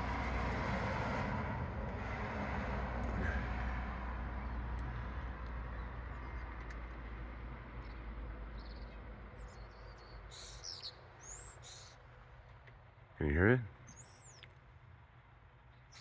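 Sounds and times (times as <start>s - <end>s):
car passing: 0.0s - 8.6s
bird chirps: 8.6s - 12.0s, 13.8s - 14.5s, 15.7s - 16.0s.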